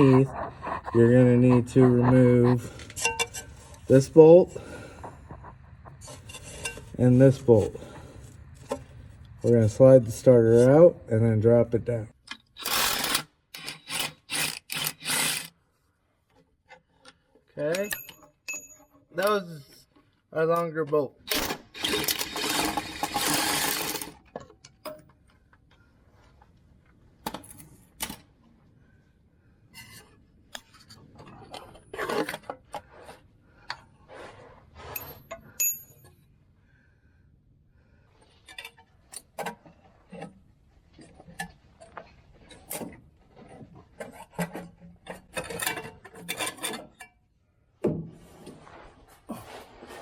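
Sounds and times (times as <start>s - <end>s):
metal clinks and knocks: 2.7s - 3.9s, 17.7s - 19.1s.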